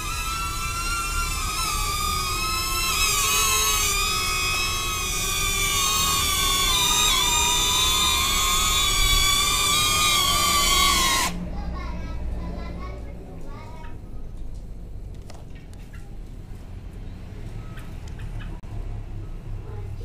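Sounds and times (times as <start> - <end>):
drone propellers whining: 0.0 - 11.4.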